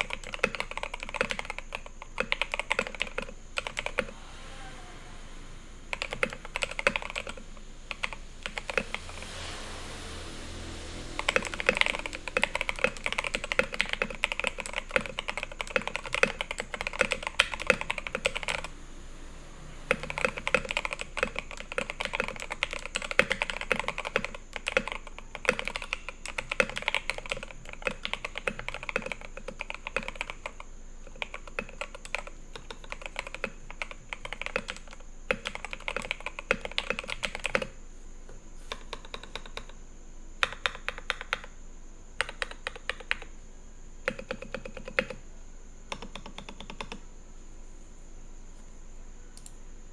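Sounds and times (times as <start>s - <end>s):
typing on mechanical keyboard: 0.0s - 4.1s, 5.9s - 9.1s, 11.2s - 18.7s, 19.9s - 37.8s, 38.7s - 39.8s, 40.4s - 41.6s, 42.2s - 43.3s, 44.1s - 45.2s, 45.9s - 47.0s.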